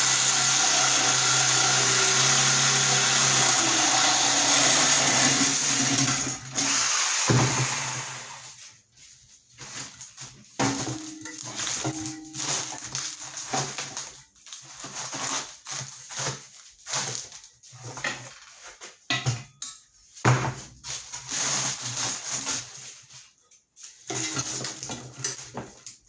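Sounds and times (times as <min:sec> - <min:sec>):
reciprocating saw cutting steel: 0:00.0 - 0:08.4.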